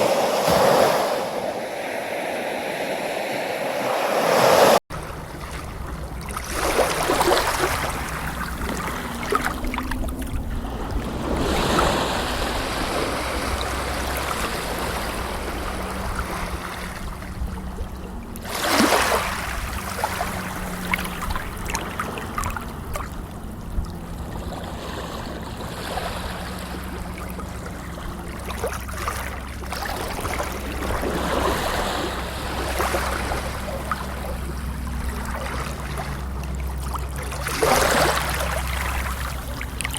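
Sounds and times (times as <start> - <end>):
water rushing and splashing: 0.0 - 39.9
steady low rumble: 4.9 - 39.9.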